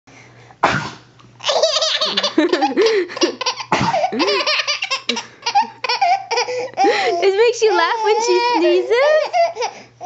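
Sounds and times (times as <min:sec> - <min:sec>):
baby sneezing: 0:00.6 - 0:01.0, 0:03.6 - 0:04.1
baby laughing: 0:01.4 - 0:09.8.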